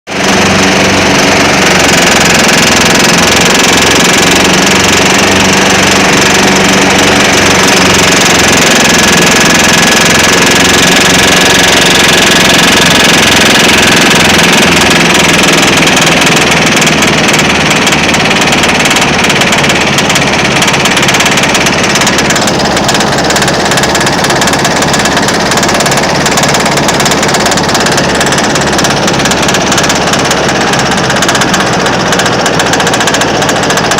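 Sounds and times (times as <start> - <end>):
mower engine knocking: 0.1 - 33.9.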